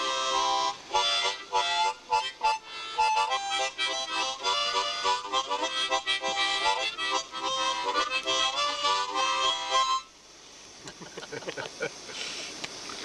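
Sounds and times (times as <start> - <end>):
harmonica music: 0.0 - 10.2.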